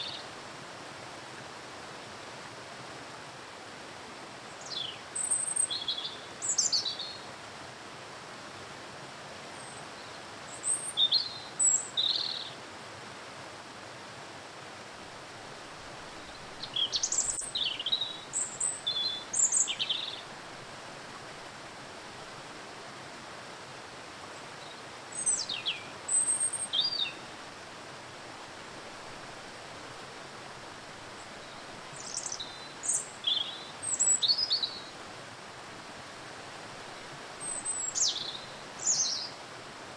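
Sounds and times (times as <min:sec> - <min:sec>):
songbirds chirping: 0:16.1 - 0:20.4, 0:31.2 - 0:34.9, 0:37.4 - 0:39.4.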